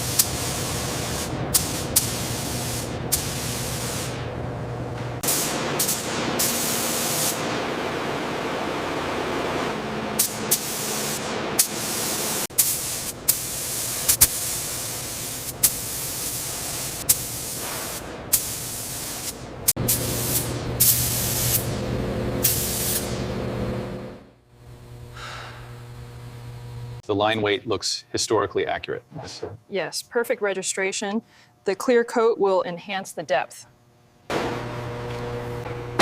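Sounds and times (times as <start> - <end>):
paint spray gun hissing: 0.0 - 4.2, 5.2 - 7.5, 10.2 - 21.7, 22.4 - 23.2.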